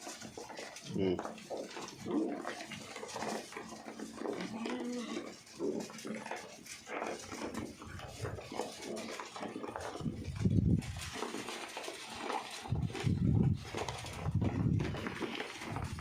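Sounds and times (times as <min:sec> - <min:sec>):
knocks and shuffling: 0:00.0 - 0:16.0
goats bleating: 0:04.1 - 0:05.4.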